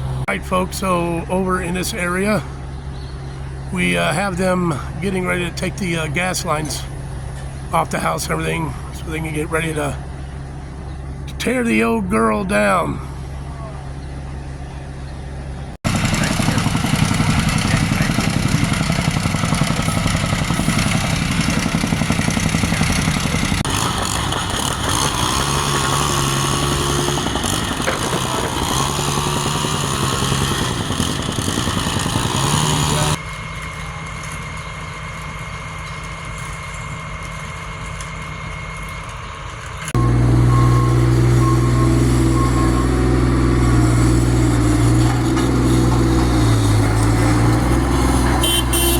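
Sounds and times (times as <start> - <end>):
voices: 0.0 - 2.7, 3.4 - 7.0, 7.7 - 10.2, 11.2 - 15.1, 16.0 - 21.1, 27.1 - 30.0, 32.2 - 33.2
machinery engines running: 0.0 - 48.9.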